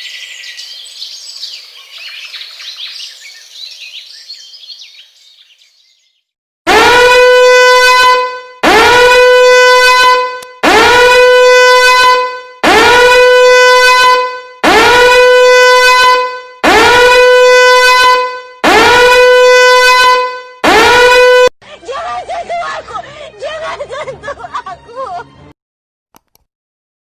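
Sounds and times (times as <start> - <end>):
horn blasts: 6.7 - 21.5.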